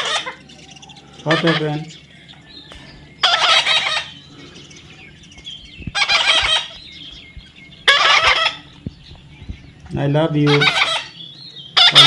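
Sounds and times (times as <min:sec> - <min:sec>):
parrot squawking: 0:00.0 - 0:02.1, 0:03.2 - 0:04.4, 0:05.2 - 0:08.9, 0:10.3 - 0:12.0.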